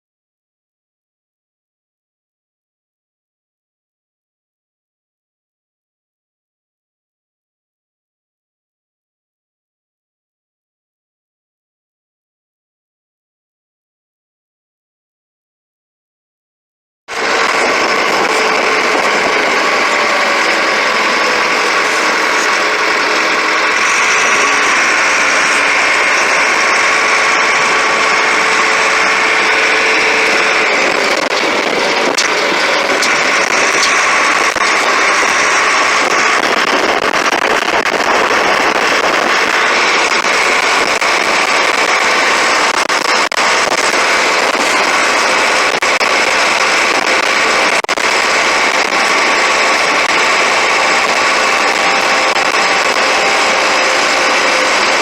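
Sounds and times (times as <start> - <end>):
backhoe engine running: 17.1 - 55.0.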